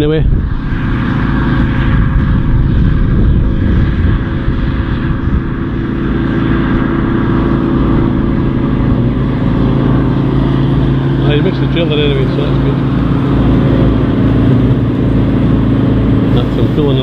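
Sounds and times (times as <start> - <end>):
combine harvester engine rumbling: 0.0 - 17.0.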